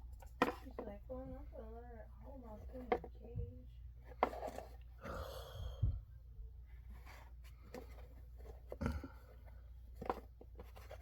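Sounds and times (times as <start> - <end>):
steady low hum: 0.0 - 11.0
objects and packaging handled: 4.0 - 5.0, 6.7 - 11.0.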